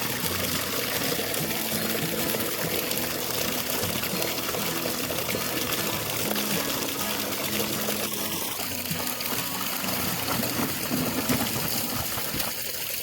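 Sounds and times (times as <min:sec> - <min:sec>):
water pouring and trickling: 0:00.0 - 0:13.0.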